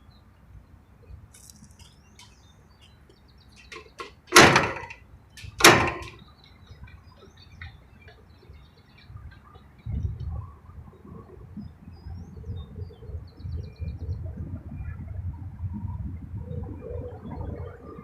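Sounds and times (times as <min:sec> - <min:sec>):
loud metal clunks: 0:03.6 - 0:06.2.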